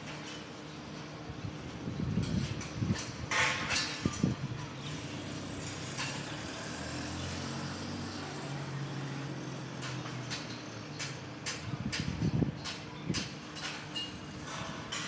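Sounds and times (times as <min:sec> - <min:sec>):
metal scaffolding clanging: 0:02.4 - 0:05.1, 0:09.8 - 0:15.0.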